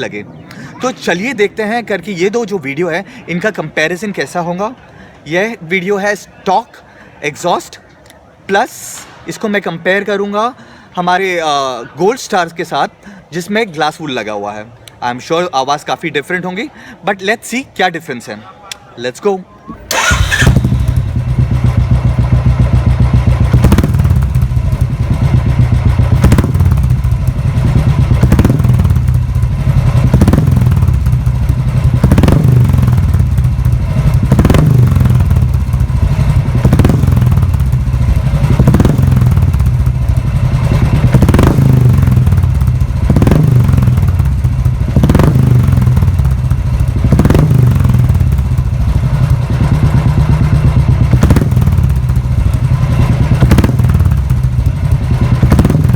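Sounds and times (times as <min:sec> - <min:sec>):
motorcycle engine idling: 0:19.9 - 0:55.9.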